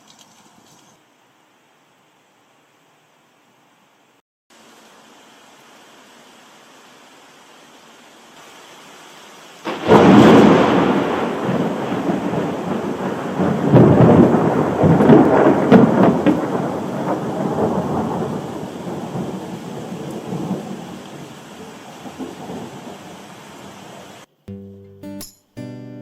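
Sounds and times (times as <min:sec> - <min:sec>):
steady rain: 0:00.0 - 0:24.3
thunder rumbling: 0:09.6 - 0:24.0.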